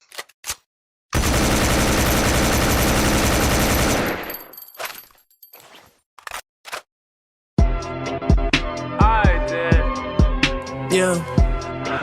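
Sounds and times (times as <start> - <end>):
automatic gunfire burst: 1.2 - 4.3.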